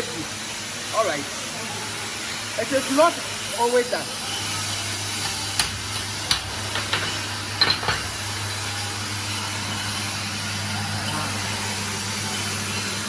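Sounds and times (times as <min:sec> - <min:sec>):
hammer tapping steel plates: 0:05.2 - 0:08.7.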